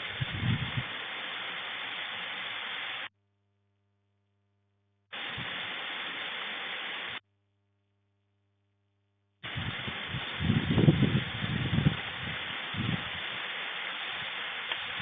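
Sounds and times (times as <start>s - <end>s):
heavy rain hissing: 0.0s - 3.1s, 5.1s - 7.2s, 9.4s - 15.0s.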